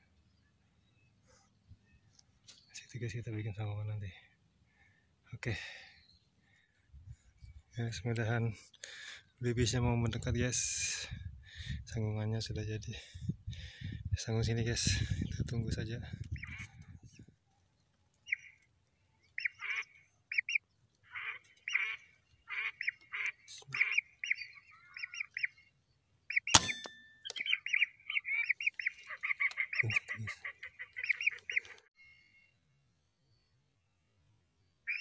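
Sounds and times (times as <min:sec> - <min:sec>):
ducks whistling: 0:19.4 - 0:25.7, 0:26.3 - 0:31.9
loud sharp click: 0:26.5 - 0:27.4.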